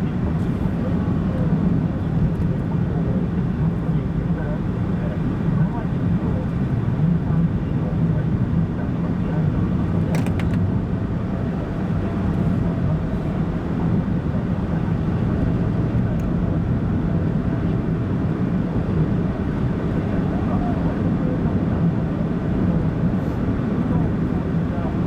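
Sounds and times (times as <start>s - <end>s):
car engine and road rumble: 9.5s - 20.0s.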